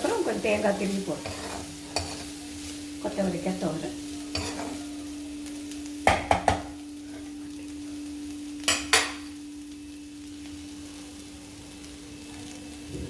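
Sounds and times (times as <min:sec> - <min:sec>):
metal utensil clinking on pan: 0:01.2 - 0:02.3, 0:04.3 - 0:04.8, 0:08.7 - 0:09.3.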